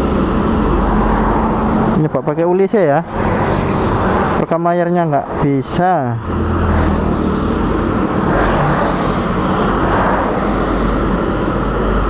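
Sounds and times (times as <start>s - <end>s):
rushing wind noise: 0.0s - 12.0s
motorcycle engine at full throttle: 5.9s - 12.0s.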